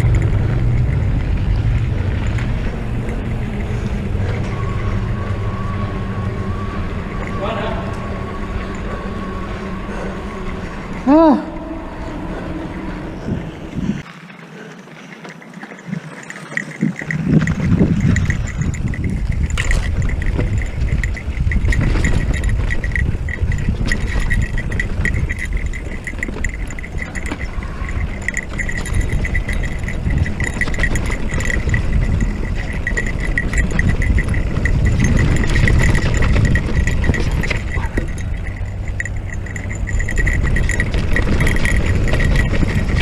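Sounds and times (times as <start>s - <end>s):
steady high whine: 0.0s - 14.0s
wind buffeting microphone: 0.0s - 14.1s, 15.8s - 43.0s
bike tyre and frame rattle: 0.0s - 43.0s.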